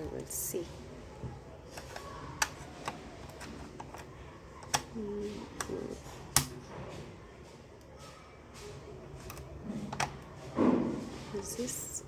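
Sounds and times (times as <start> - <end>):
plastic clicks and taps: 1.7 - 6.7, 9.2 - 10.3.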